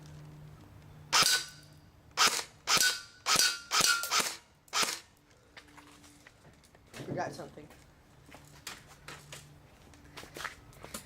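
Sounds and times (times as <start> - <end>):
airsoft rifle shots: 1.1 - 1.6, 2.2 - 5.0.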